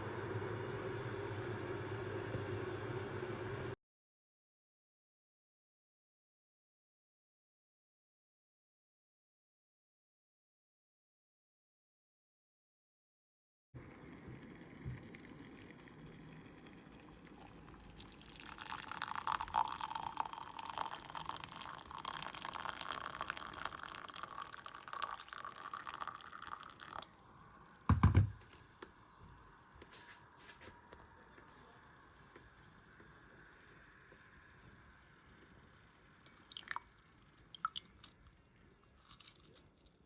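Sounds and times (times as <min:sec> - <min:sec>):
hot water pouring into cup: 0:13.8 - 0:40.0.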